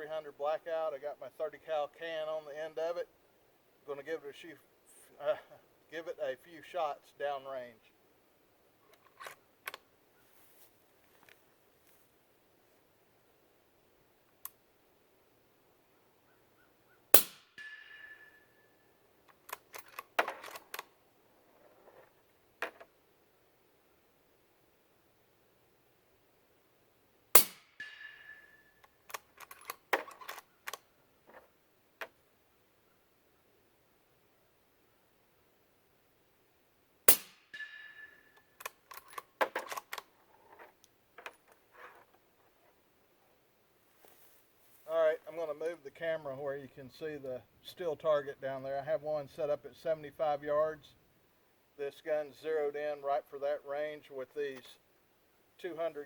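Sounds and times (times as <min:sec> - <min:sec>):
suppressed rifle shot: 0:17.1 - 0:18.4, 0:27.4 - 0:28.6, 0:37.1 - 0:38.2.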